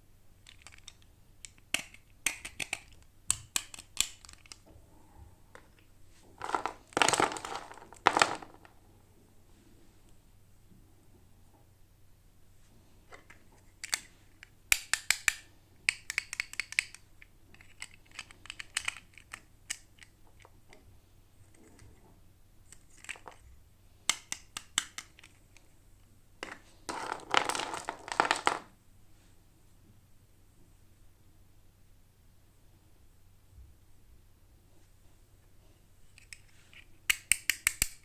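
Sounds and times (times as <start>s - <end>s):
packaging clicks and taps: 0.5s - 4.7s, 14.7s - 20.8s, 24.1s - 25.6s, 36.2s - 38.0s.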